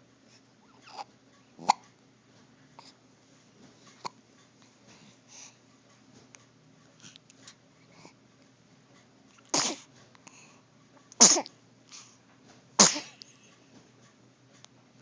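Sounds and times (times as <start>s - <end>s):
person sneezing: 9.6s - 9.9s, 11.2s - 11.5s, 12.8s - 13.2s.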